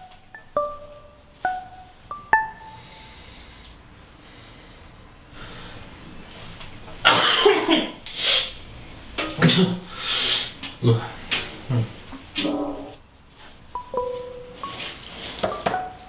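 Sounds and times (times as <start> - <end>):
ringing marimba-like notes: 0.0 - 3.2, 13.8 - 16.0.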